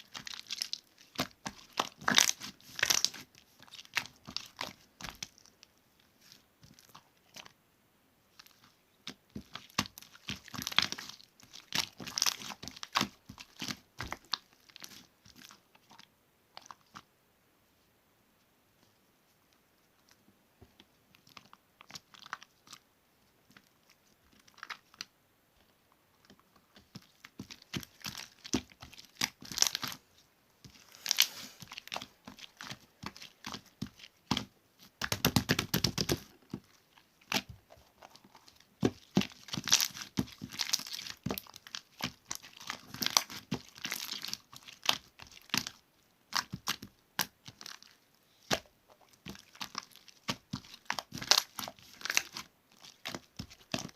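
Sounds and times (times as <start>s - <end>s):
slime squished by hand: 0.0s - 5.6s, 8.3s - 17.0s, 26.7s - 30.0s, 30.7s - 53.9s.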